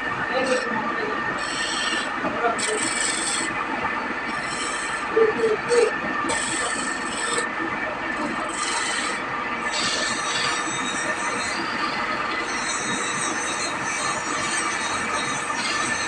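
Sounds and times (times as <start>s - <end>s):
tool rasping on wood: 1.4s - 3.5s, 4.3s - 7.5s, 8.2s - 11.6s.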